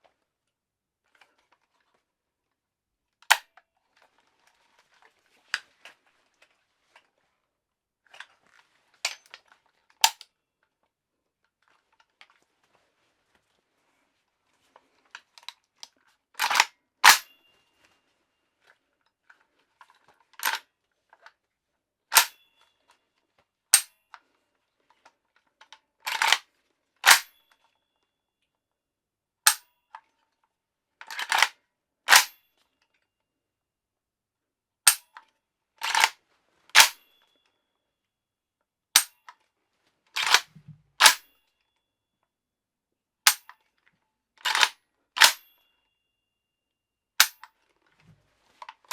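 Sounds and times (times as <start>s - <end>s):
gun bolt rattling back: 40.2s - 41.2s
gun bolt slamming forward: 40.2s - 41.2s, 44.5s - 45.4s.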